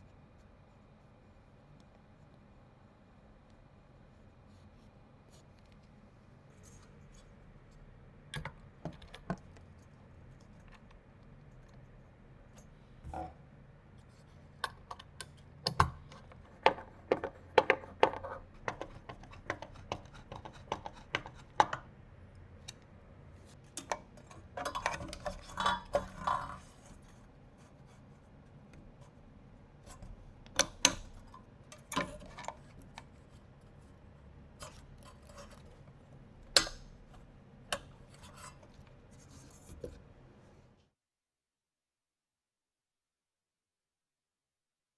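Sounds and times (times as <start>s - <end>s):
computer parts clicking and clattering: 15.0s - 21.9s.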